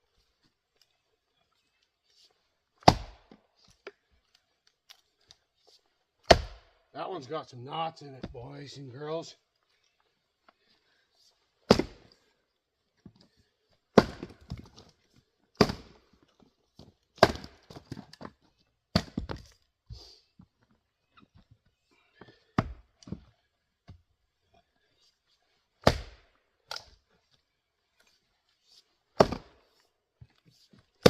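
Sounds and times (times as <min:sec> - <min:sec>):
axe striking firewood: 0:02.8 - 0:03.4, 0:06.2 - 0:06.8, 0:11.7 - 0:12.2, 0:13.9 - 0:14.9, 0:15.6 - 0:16.2, 0:16.8 - 0:18.3, 0:18.9 - 0:19.6, 0:22.6 - 0:23.3, 0:25.8 - 0:27.0, 0:29.2 - 0:29.8.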